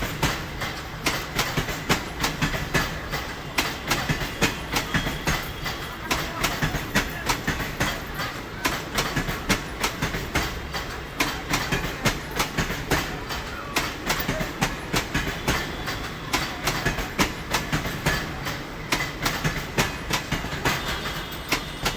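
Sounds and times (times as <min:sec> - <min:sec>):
train rumble: 0:00.0 - 0:21.9
train wheels clacking: 0:00.0 - 0:21.9.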